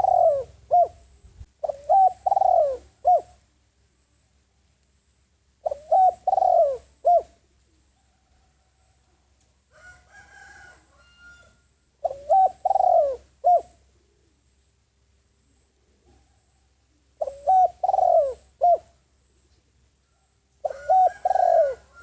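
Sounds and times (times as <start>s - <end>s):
dove cooing: 0.0s - 3.5s, 5.6s - 8.7s, 10.4s - 14.5s, 15.7s - 19.0s, 20.6s - 22.0s.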